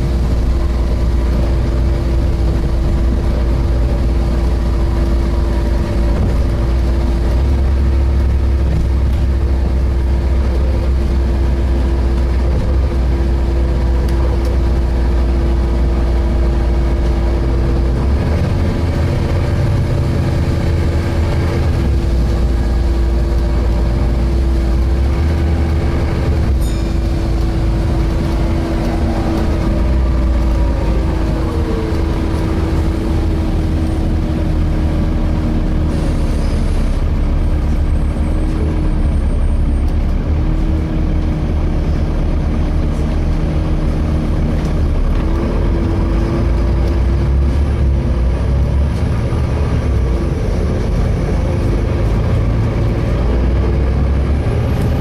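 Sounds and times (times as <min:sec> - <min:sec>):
steady whine: 0:00.0 - 0:40.3
bus engine and road rumble: 0:00.0 - 0:55.0.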